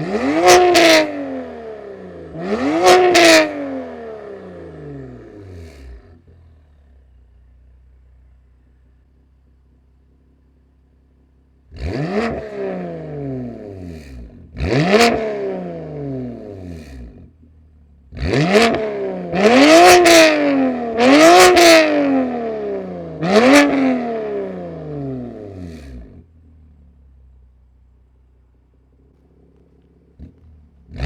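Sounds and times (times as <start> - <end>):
car engine idling and revving: 0.0 - 31.0
exhaust cracks: 25.6 - 31.0.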